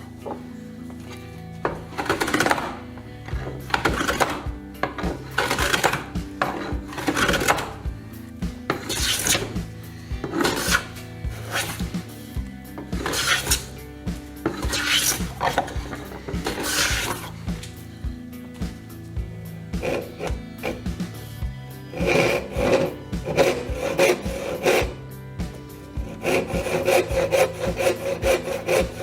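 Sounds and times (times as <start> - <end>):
background music: 0.0 - 29.0
hand file strokes: 3.5 - 7.8, 8.6 - 12.2, 12.9 - 17.8, 19.8 - 29.0.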